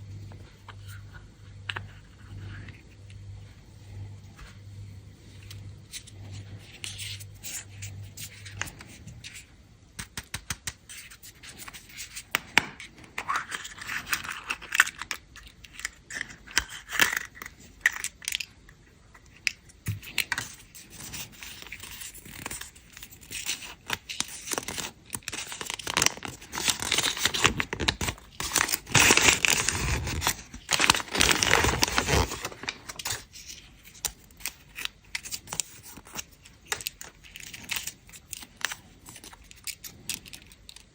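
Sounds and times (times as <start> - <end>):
wrapper crinkling and tearing: 20.1 - 40.9.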